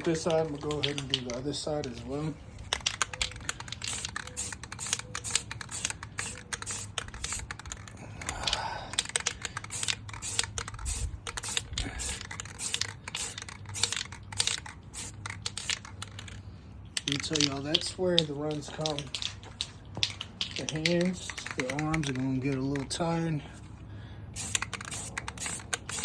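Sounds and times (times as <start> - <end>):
spray can clicking and hissing: 2.7 - 8.0, 9.0 - 16.4, 24.4 - 26.0.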